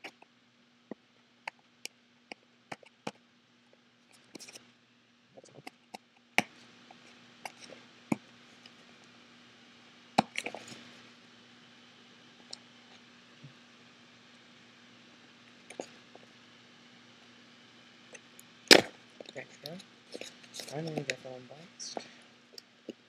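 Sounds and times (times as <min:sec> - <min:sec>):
loud packaging snaps: 0:18.7 - 0:19.0.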